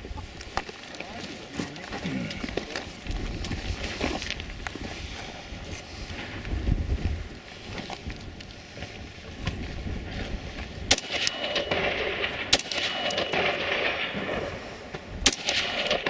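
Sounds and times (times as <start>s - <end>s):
wind buffeting microphone: 2.2s - 16.0s
rifle shots: 10.9s - 16.0s.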